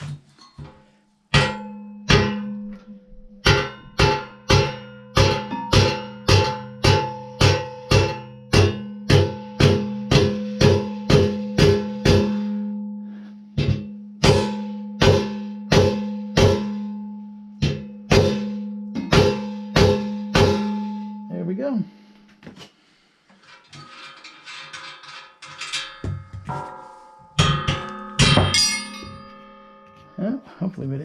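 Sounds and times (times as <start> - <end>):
metal frame ringing: 1.3 - 12.9, 13.6 - 22.1, 23.4 - 31.0
hammer blows on steel: 3.4 - 12.7.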